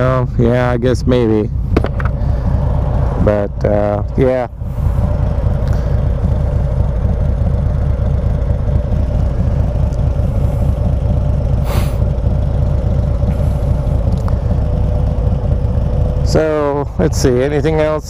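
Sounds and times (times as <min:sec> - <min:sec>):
motorcycle engine rumbling: 0:00.0 - 0:18.0
short hiss: 0:11.6 - 0:12.0.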